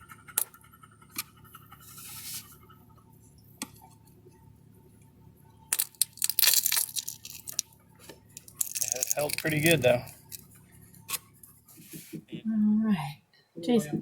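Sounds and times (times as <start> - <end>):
tool scraping: 1.2 - 2.6, 11.0 - 12.3.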